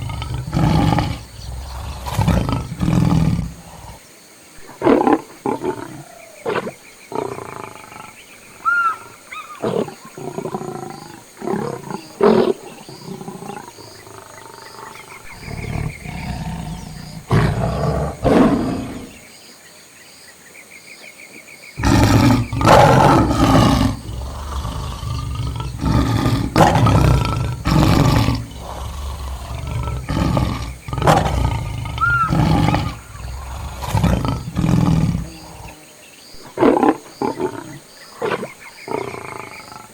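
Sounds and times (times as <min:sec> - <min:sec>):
lions roaring and growling: 0:00.0 - 0:04.0, 0:09.6 - 0:19.2, 0:21.8 - 0:35.8.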